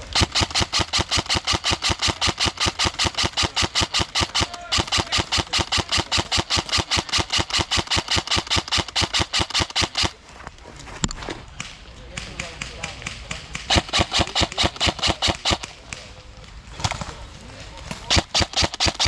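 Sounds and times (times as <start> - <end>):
airsoft gun rapid firing: 0.0 - 10.2, 12.1 - 16.1, 18.0 - 19.0.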